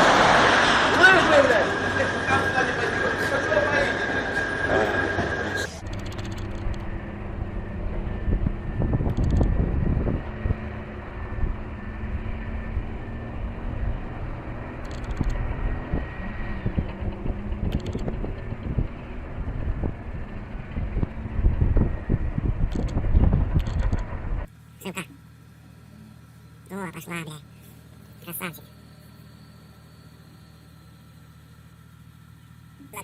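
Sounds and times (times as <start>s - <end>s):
heavy vehicle engine rumbling: 0.0s - 33.0s
wind buffeting microphone: 6.9s - 24.5s.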